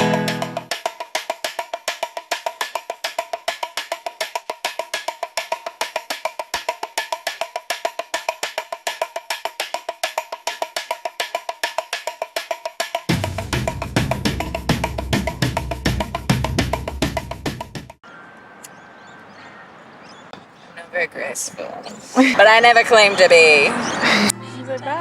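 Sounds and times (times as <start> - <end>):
wood block clicking percussion: 0.0 - 13.1.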